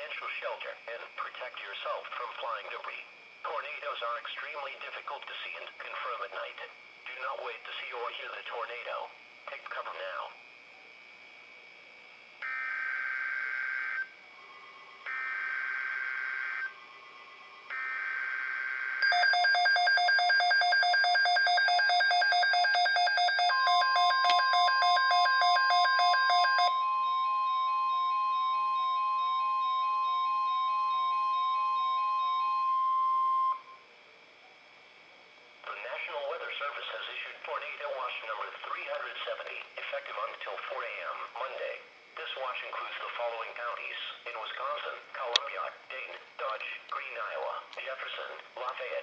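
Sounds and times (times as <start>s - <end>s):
pulsing multi-tone alarm: 12.4s - 14.2s, 15.0s - 16.9s, 17.7s - 33.8s
steady attention tone: 17.7s - 33.8s.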